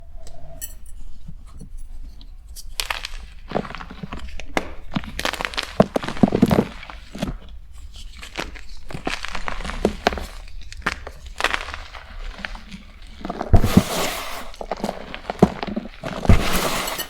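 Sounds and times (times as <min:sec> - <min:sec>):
chalk block crunching: 0:02.5 - 0:17.0.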